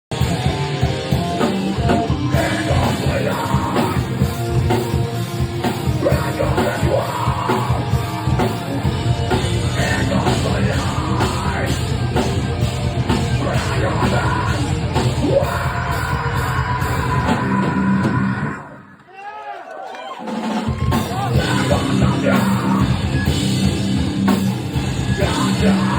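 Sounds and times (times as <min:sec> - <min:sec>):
heavy rock band playing: 0:00.1 - 0:18.9, 0:20.2 - 0:25.9
screamed vocals: 0:02.4 - 0:04.1, 0:06.0 - 0:08.3, 0:13.4 - 0:23.4, 0:25.1 - 0:25.9.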